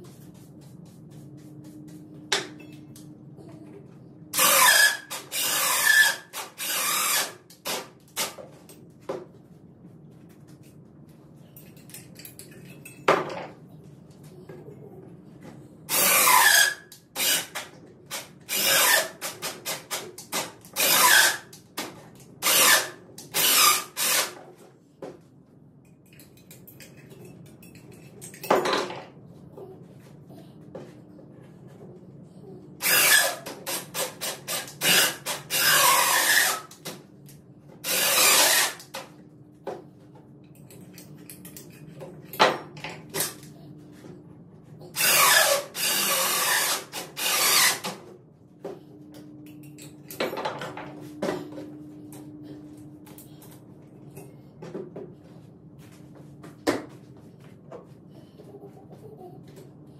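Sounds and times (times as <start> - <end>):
power drill bursts: 4.4 - 7.3, 20.8 - 21.4, 22.4 - 24.3, 34.5 - 36.6, 37.9 - 38.8, 45.0 - 47.8.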